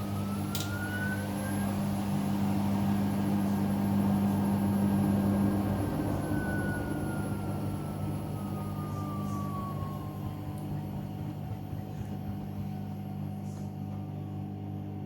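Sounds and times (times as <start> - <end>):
washing machine hum: 0.0 - 15.0
washing machine motor whine: 0.0 - 15.0.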